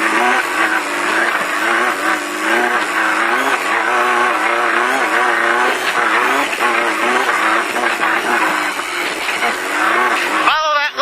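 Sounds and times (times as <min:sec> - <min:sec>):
race car engine revving: 0:00.0 - 0:11.0.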